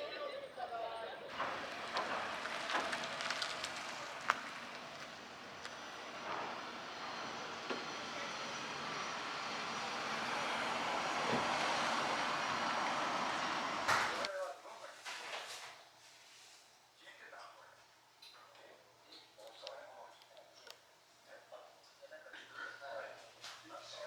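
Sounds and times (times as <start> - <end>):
vehicle rushing noise: 1.3 - 14.3.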